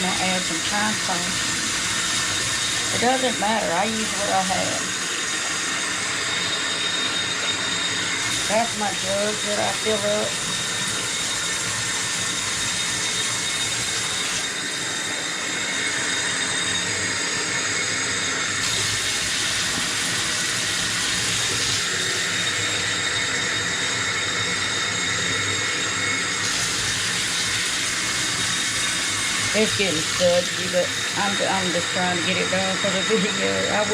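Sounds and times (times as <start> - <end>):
tap water running into jug: 0.0 - 6.3, 8.2 - 14.4, 18.6 - 22.8, 26.4 - 31.9.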